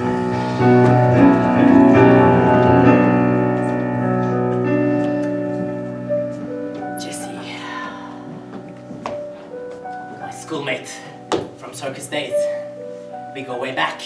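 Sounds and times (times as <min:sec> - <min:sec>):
piano playing slow chords: 0:00.0 - 0:14.0.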